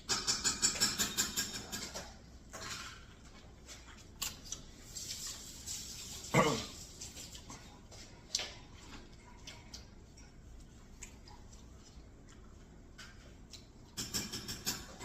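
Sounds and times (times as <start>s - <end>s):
wet chewing mouth sounds: 3.4s - 5.4s, 6.6s - 14.0s.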